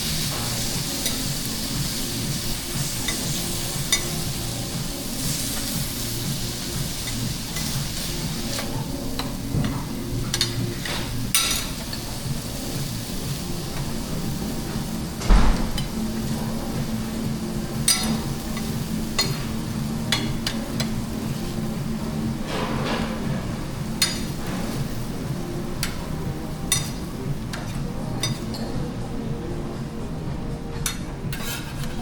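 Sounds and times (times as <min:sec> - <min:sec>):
food sizzling on a griddle: 0:00.0 - 0:29.6, 0:31.2 - 0:32.0
metal spatulas clacking and scraping: 0:07.0 - 0:12.1, 0:24.0 - 0:24.8, 0:30.8 - 0:32.0.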